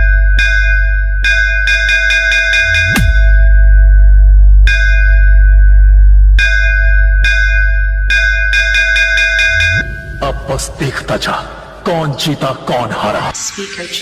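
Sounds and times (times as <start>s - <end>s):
bell-like synth tone hits: 2.5s - 10.4s
deep sub-bass drone: 2.6s - 10.4s.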